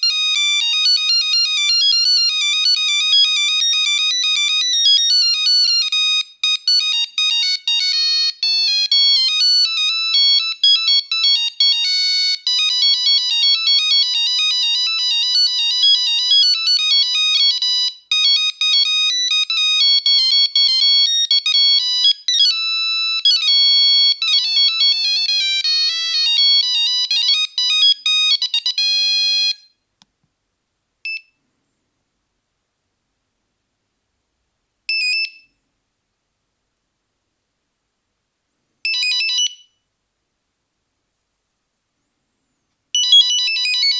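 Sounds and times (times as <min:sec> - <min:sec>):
monophonic ringtone melody: 0:00.0 - 0:29.6, 0:43.0 - 0:43.9.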